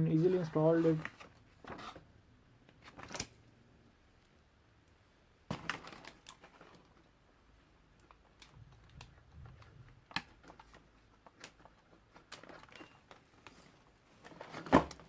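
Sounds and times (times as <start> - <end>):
soft rustles and clicks: 4.2 - 15.0.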